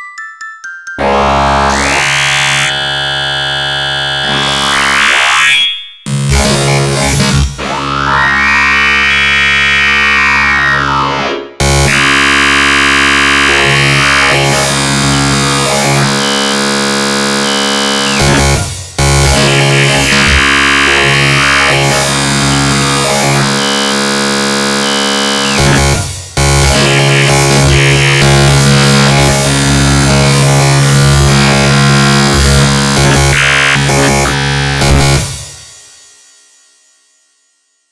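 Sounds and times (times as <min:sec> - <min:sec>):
synth ringtone loop: 0:00.0 - 0:04.8.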